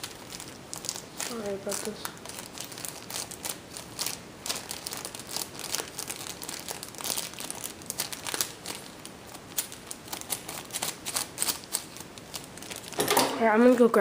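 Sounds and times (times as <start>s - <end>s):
plastic bag crinkling: 0.0s - 14.0s
scissors cutting plastic: 9.5s - 13.8s.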